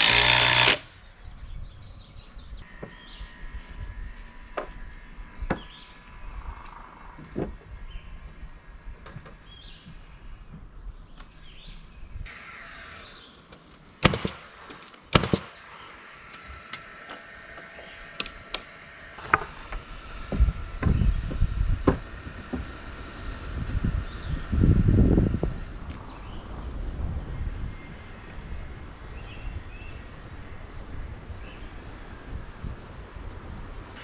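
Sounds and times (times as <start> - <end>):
birds chirping: 0.0 - 21.8, 22.4 - 34.0.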